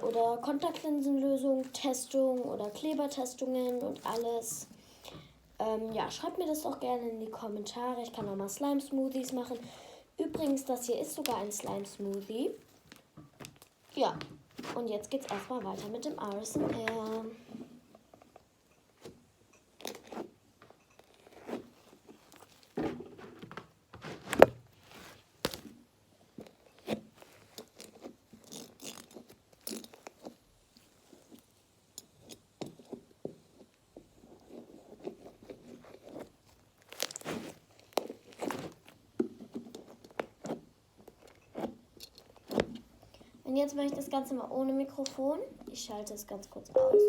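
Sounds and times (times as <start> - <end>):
slime crackling and squelching: 34.8 - 39.0.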